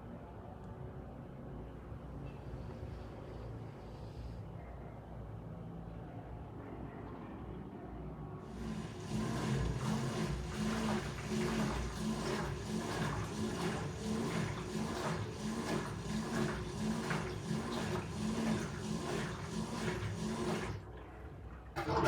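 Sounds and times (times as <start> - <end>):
washing machine pulsing: 8.4 - 22.0.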